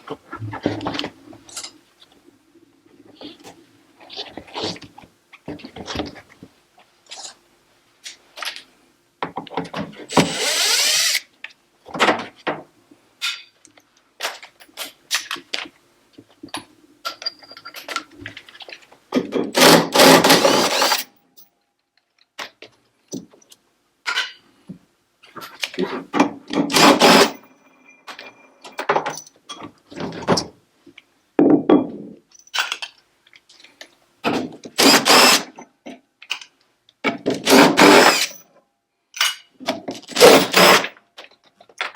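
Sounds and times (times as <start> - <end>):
electric screwdriver spinning: 10.2 - 11.2, 20.0 - 21.0, 34.8 - 35.4
knocks and clicks of parts handled: 41.2 - 41.9.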